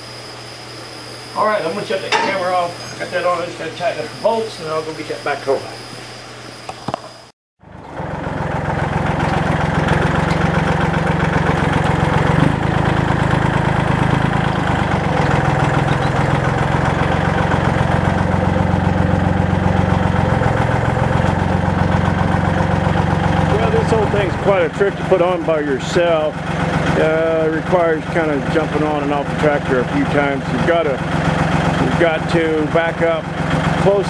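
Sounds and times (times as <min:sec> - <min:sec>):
tractor engine idling: 0:07.6 - 0:34.0.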